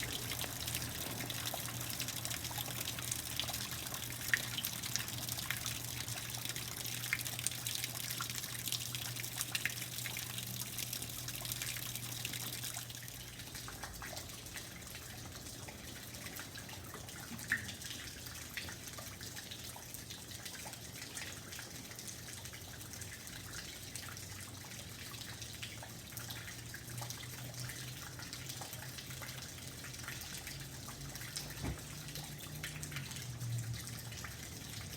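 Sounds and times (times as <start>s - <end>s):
low steady hum: 0.0s - 16.1s
rain falling with drips: 0.0s - 34.9s.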